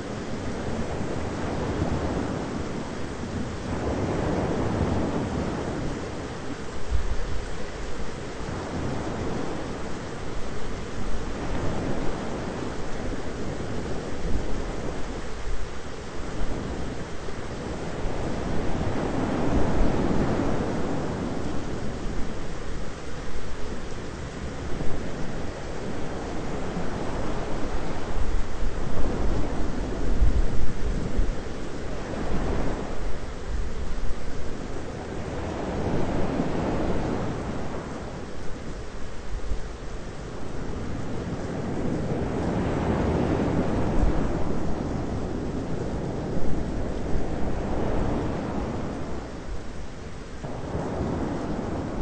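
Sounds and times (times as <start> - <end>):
rain and wind rushing: 0.0 - 52.0
low thunder rumble: 40.3 - 52.0.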